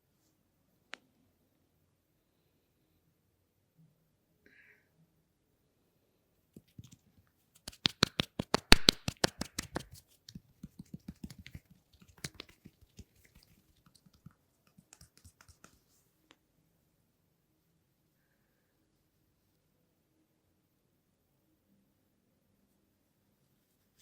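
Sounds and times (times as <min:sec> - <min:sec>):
hands tapping on head and hair: 0:07.6 - 0:16.0.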